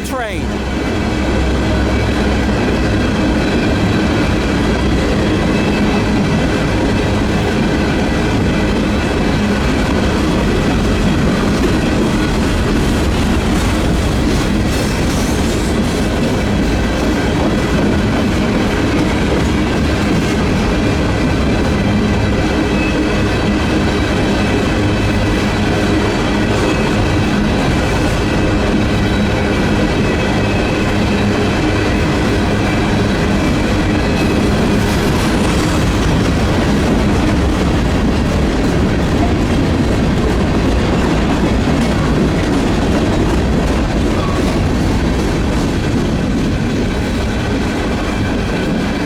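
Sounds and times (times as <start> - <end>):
train wheels rumbling on rails: 0.5 - 49.0.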